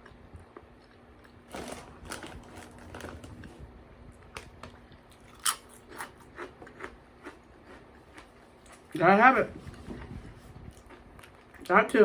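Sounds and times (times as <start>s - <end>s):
chewing with mouth noises: 4.9s - 9.0s, 9.6s - 12.0s.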